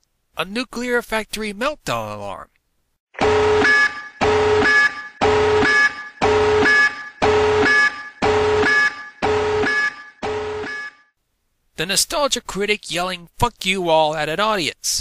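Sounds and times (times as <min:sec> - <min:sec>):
loud buzzing alarm: 0:03.2 - 0:11.1.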